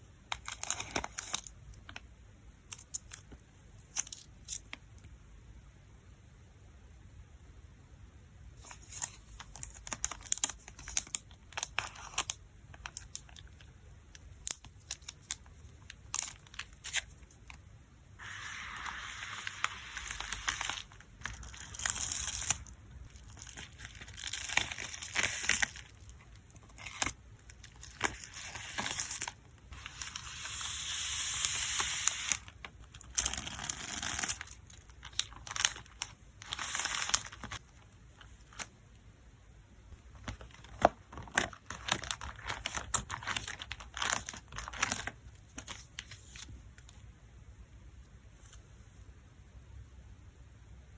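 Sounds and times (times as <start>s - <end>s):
plastic packaging crinkling: 18.2s - 38.7s, 40.1s - 46.9s.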